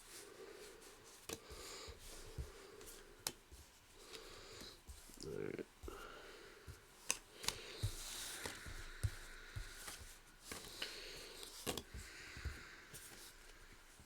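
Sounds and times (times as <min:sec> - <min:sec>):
cards sliding: 0:07.0 - 0:12.0
cards tapped on a table: 0:07.0 - 0:12.6.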